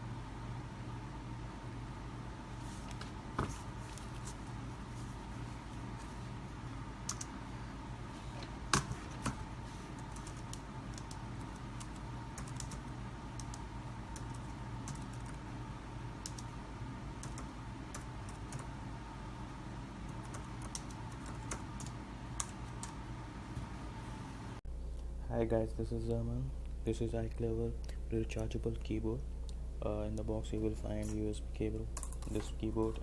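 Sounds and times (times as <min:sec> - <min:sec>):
low electrical hum: 0:00.0 - 0:33.0
computer keyboard typing: 0:07.0 - 0:07.4, 0:08.7 - 0:15.4, 0:16.2 - 0:16.5, 0:17.2 - 0:18.7, 0:20.1 - 0:23.0.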